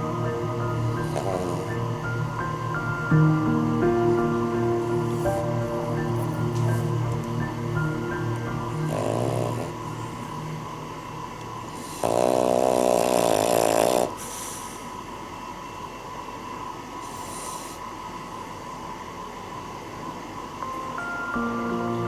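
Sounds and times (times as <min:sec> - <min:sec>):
dog snoring: 0:00.9 - 0:02.6, 0:08.7 - 0:10.4, 0:11.6 - 0:15.0, 0:17.0 - 0:17.8
dog breathing: 0:11.7 - 0:15.1, 0:17.0 - 0:17.9.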